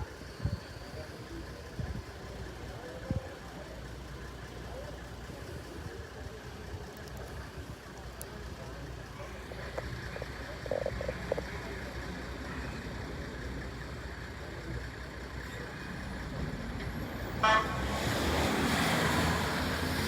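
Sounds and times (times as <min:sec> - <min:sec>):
road traffic: 0:00.0 - 0:20.0
vehicle approaching: 0:00.9 - 0:20.0
car horn toot: 0:17.4 - 0:17.9.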